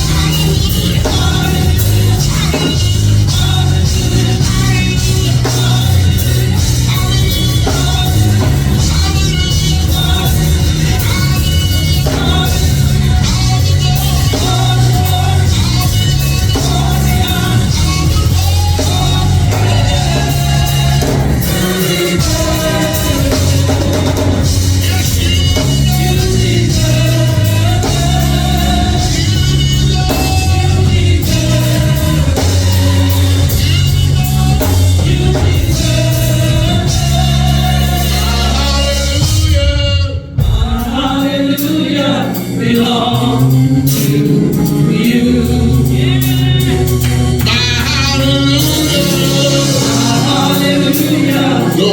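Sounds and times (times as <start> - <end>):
heavy stepping bass line: 0.0 - 41.2, 42.4 - 51.9
band with steady beat: 0.0 - 51.9
gospel singing: 0.0 - 51.9.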